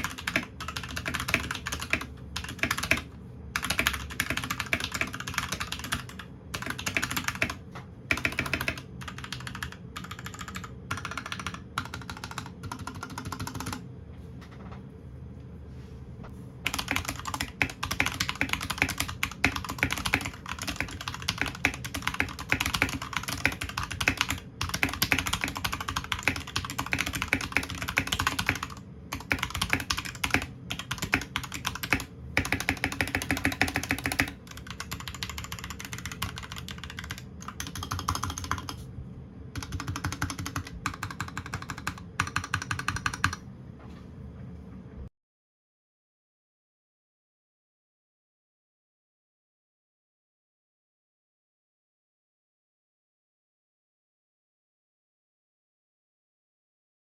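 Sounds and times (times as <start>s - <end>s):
mechanical keyboard typing: 0.0s - 13.8s, 16.7s - 38.9s, 39.5s - 43.4s.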